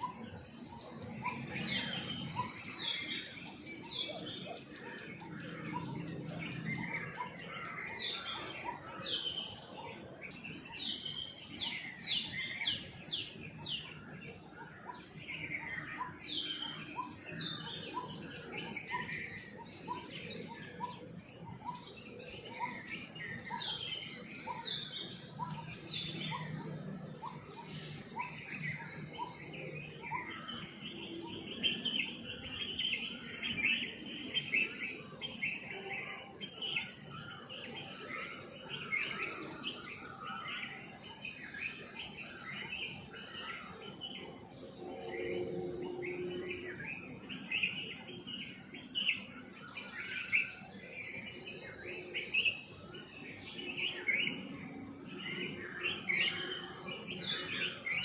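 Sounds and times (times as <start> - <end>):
birds chirping: 0.0 - 58.0.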